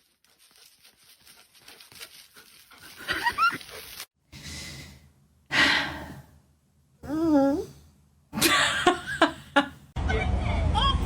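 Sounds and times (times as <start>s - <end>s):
dog whimpering: 7.1s - 7.7s.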